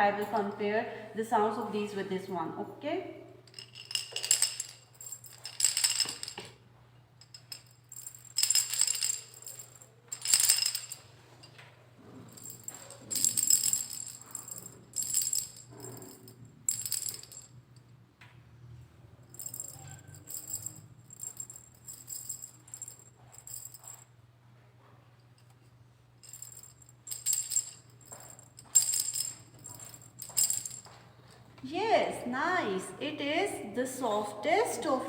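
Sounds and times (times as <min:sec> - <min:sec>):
cylinders rattling when shaken: 0:03.5 - 0:06.6, 0:07.2 - 0:11.6, 0:12.2 - 0:17.6, 0:19.3 - 0:24.0, 0:26.2 - 0:31.0.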